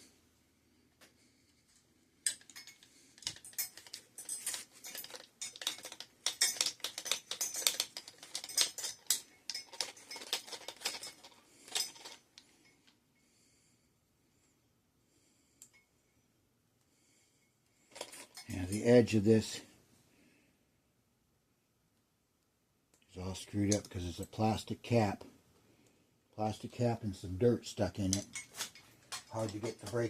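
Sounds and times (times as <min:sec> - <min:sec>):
hand tools clicking and scraping: 0:02.2 - 0:13.0, 0:17.9 - 0:19.0, 0:23.5 - 0:25.0, 0:27.8 - 0:30.0.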